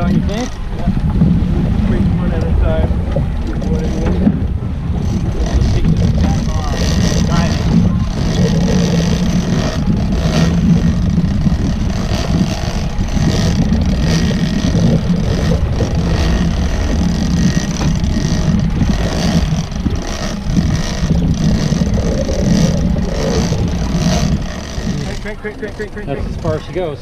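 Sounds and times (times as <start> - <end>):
boat engine running: 0.0 - 27.0.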